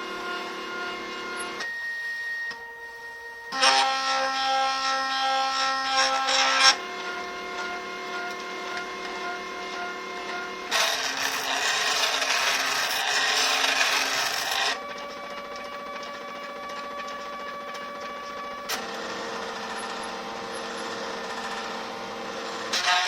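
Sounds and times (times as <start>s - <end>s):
machine motors whining: 0.0s - 23.0s
loud rasping noise: 3.6s - 8.0s, 9.2s - 14.8s.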